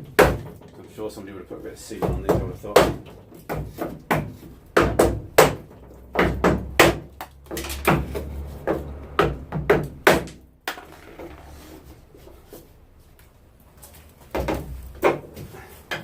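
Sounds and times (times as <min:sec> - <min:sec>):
wood block knocking on metal frame: 0:02.0 - 0:10.9.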